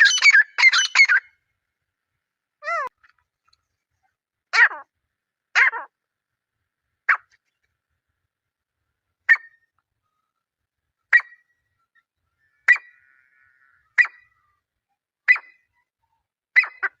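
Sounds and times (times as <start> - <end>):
bird calling high sharp notes: 0.0 - 1.3.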